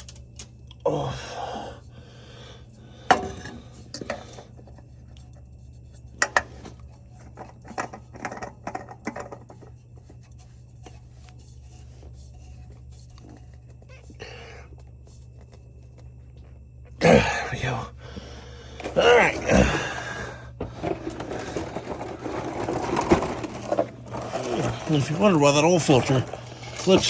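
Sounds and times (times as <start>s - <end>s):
steady low hum: 0.0s - 27.0s
metal tools clinking and scraping: 18.8s - 20.0s, 20.6s - 27.0s.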